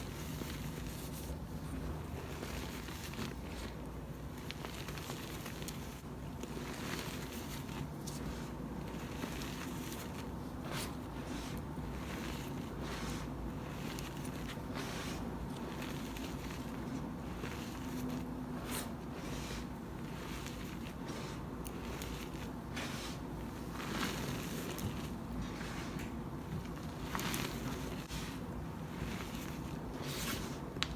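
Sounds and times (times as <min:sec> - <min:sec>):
chalk crunching in hands: 0:04.5 - 0:26.2.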